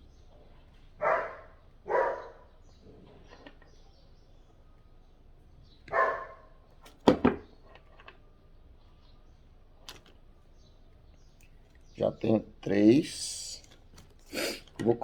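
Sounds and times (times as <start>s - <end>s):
dog barking: 1.0s - 2.5s, 5.9s - 6.5s.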